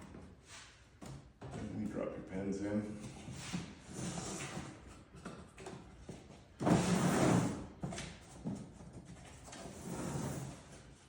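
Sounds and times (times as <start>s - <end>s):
scraping slide: 9.6s - 10.9s.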